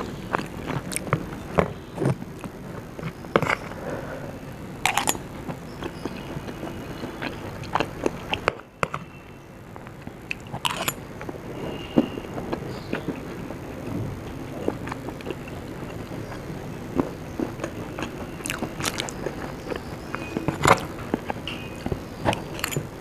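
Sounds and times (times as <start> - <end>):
person chewing and biting: 0.0 - 4.1, 4.8 - 9.1, 10.2 - 11.4, 14.2 - 22.9.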